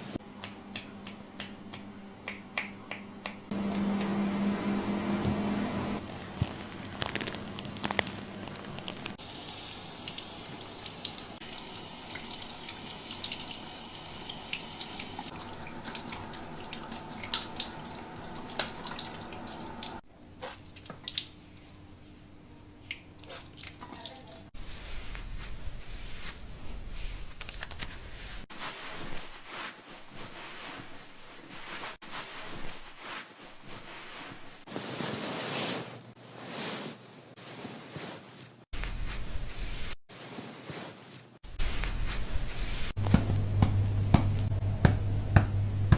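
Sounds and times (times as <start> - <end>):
water running and dripping: 5.7 - 24.6.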